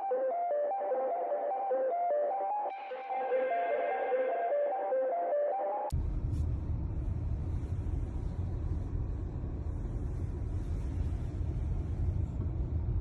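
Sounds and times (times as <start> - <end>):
car rumbling in motion: 5.9 - 13.0.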